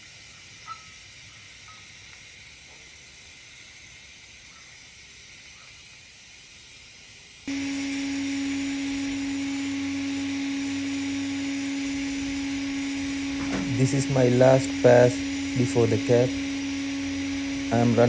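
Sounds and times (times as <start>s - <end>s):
loud electrical hum: 0.0s - 18.0s
welding arc hiss: 0.0s - 18.0s.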